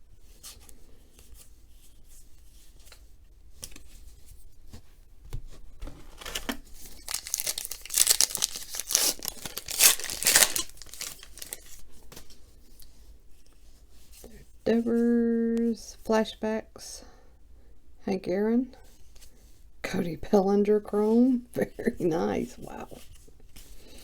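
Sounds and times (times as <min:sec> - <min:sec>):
faint handling rustles: 0:00.1 - 0:14.6
card pack wrapper tearing and crinkling: 0:06.1 - 0:11.8.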